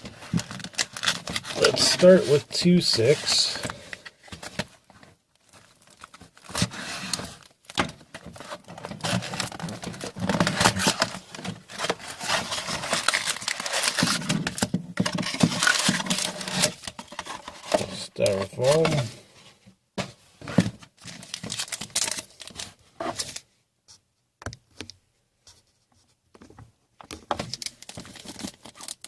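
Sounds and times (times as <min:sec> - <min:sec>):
plastic wrapping tearing and crinkling: 0:00.0 - 0:02.4, 0:05.4 - 0:19.0, 0:21.1 - 0:23.4, 0:27.4 - 0:29.0.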